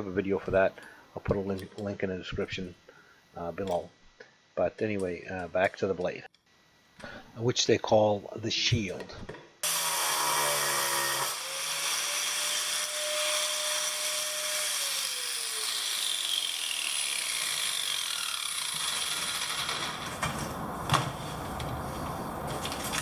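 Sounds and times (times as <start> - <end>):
angle grinder running: 9.6 - 20.2
steady hiss: 19.9 - 23.0.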